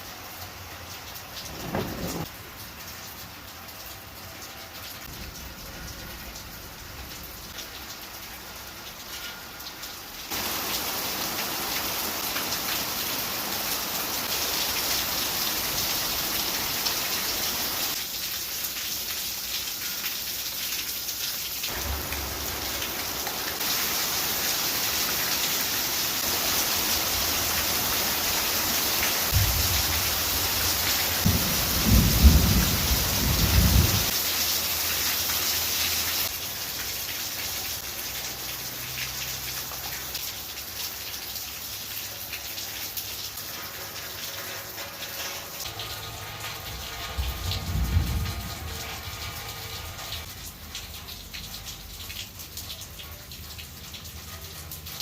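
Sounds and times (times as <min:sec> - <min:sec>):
heavy rain falling: 0:00.0 - 0:55.0
thunder rumbling: 0:01.4 - 0:02.4, 0:05.0 - 0:07.6, 0:21.7 - 0:23.4, 0:29.3 - 0:34.2, 0:45.8 - 0:50.3.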